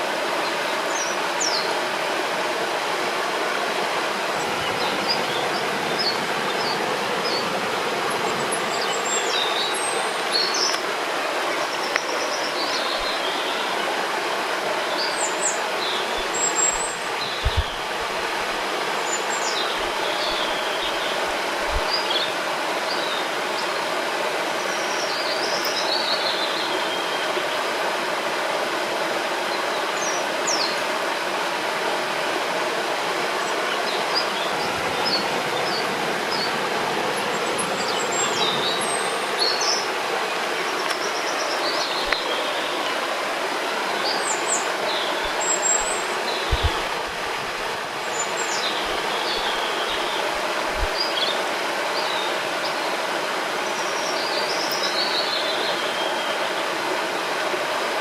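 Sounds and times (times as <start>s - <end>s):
river water rushing: 0.0s - 58.0s
birds chirping and trilling: 4.3s - 10.8s, 14.8s - 23.8s, 33.4s - 40.0s, 43.9s - 52.8s.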